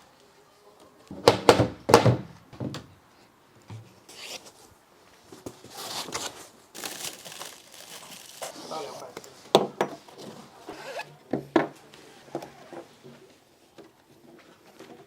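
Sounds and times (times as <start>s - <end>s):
packaging scraping and rustling: 4.1s - 4.6s, 5.5s - 9.1s.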